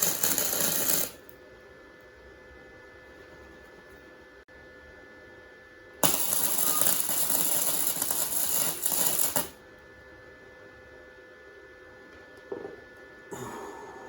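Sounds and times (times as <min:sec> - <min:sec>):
welding arc crackling: 0:00.0 - 0:01.3, 0:06.0 - 0:09.6.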